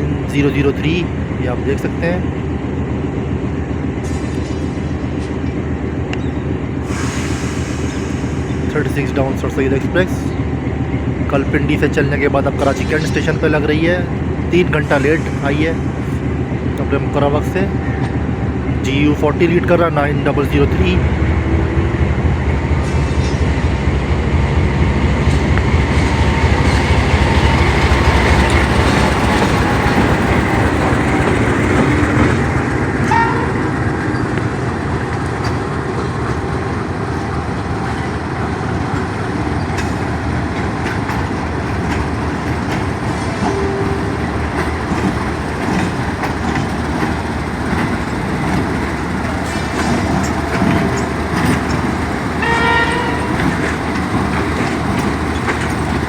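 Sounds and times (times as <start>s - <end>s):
locomotive engine rumble: 0.0s - 56.0s
train wheels clicking over rail joints: 20.9s - 56.0s.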